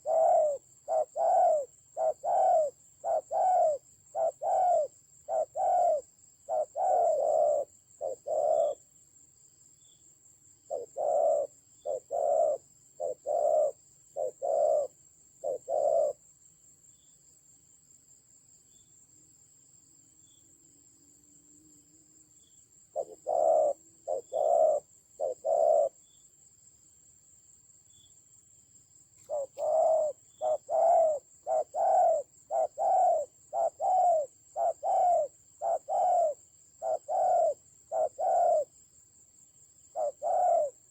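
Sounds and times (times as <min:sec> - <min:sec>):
doves cooing: 0:00.0 - 0:08.8, 0:10.7 - 0:16.2, 0:22.9 - 0:26.0, 0:29.3 - 0:38.7, 0:39.9 - 0:40.9.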